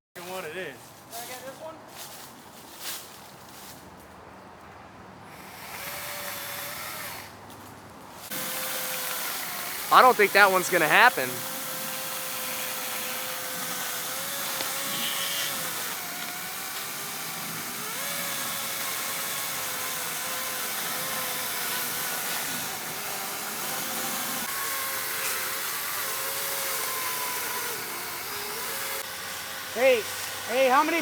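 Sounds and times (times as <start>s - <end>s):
electric chainsaw cutting wood: 5.3s - 7.3s, 8.2s - 31.0s.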